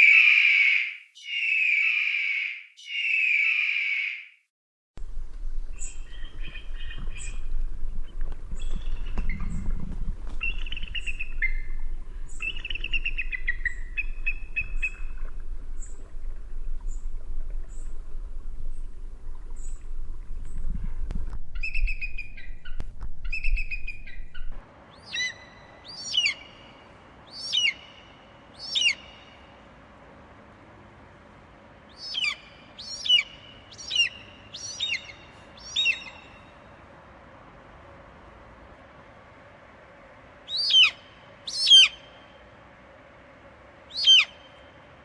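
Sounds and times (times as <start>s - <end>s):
eagle chattering whistled calls: 0.0s - 4.3s, 40.5s - 42.1s, 43.9s - 44.5s
loud sharp eagle calls: 0.0s - 4.4s, 27.3s - 28.0s, 28.6s - 29.3s, 40.5s - 42.2s, 43.9s - 44.6s
low background rumble: 5.0s - 27.3s.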